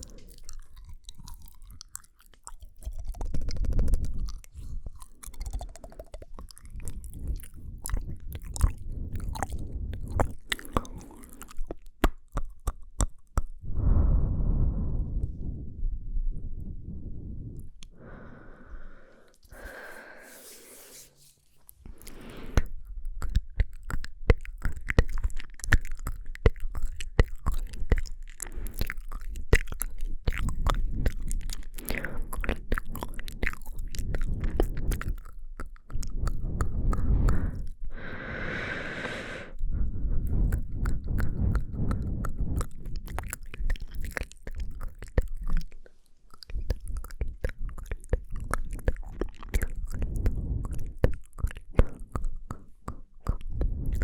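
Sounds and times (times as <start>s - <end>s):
wet lip and tongue clicks: 0.0s - 13.6s, 16.6s - 20.2s, 21.6s - 54.0s
breathy hiss: 17.9s - 21.4s, 36.6s - 39.6s.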